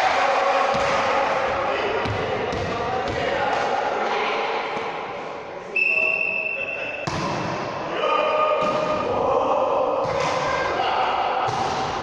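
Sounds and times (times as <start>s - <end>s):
players' voices: 0.0s - 12.0s
ball bouncing: 7.0s - 7.4s.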